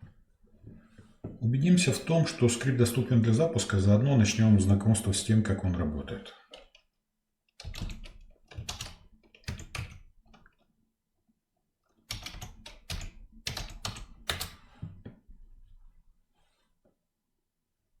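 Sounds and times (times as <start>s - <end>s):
typing on computer keyboard: 7.6s - 10.6s, 12.1s - 14.6s.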